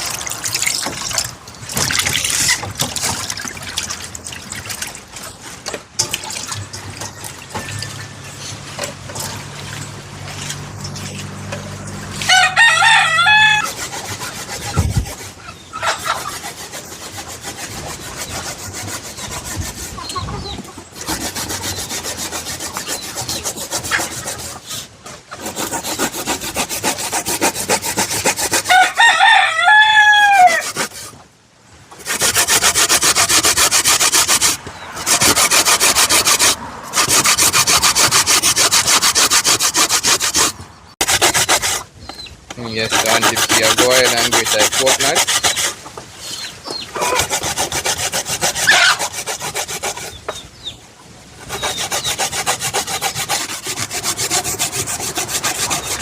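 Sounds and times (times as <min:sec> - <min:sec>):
coconut grating rasps: 0:10.8 - 0:20.1, 0:21.0 - 0:29.3, 0:32.0 - 0:41.9, 0:42.6 - 0:45.8, 0:47.0 - 0:50.4, 0:51.4 - 0:56.0
rooster crowing: 0:12.2 - 0:13.8, 0:28.7 - 0:30.7.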